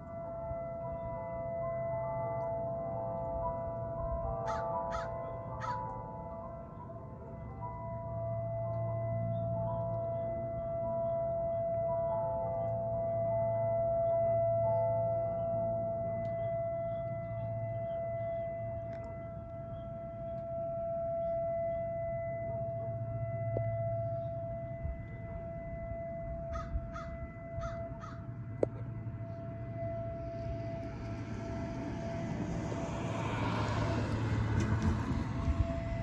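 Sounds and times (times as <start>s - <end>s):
warning siren steady tone: 0.0s - 36.0s
crows cawing: 4.4s - 5.9s, 26.5s - 28.2s
passing vehicle: 28.1s - 36.0s.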